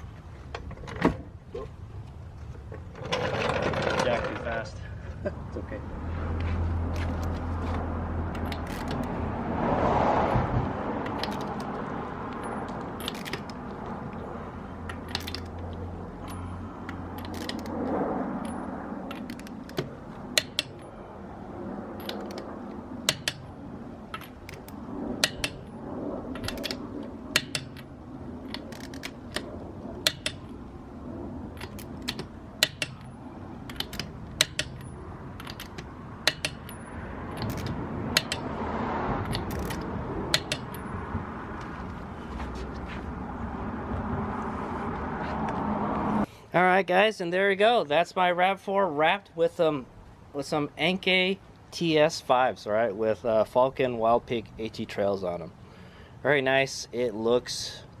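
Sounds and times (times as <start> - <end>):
torque wrench clicking: 33.7 - 36.8, 37.4 - 38.5.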